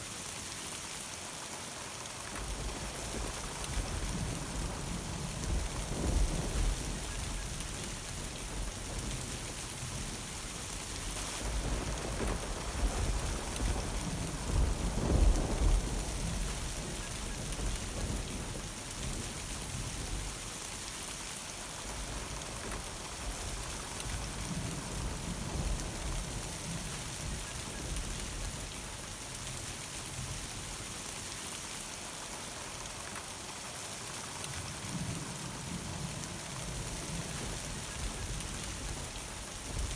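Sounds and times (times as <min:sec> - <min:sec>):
rain falling: 0:00.0 - 0:39.9
thunder rolling: 0:02.6 - 0:20.0.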